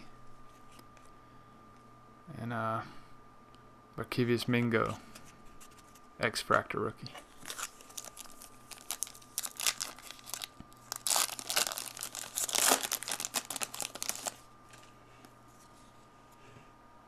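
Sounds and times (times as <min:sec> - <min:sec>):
foil wrapper crinkling and tearing: 0:07.3 - 0:14.5.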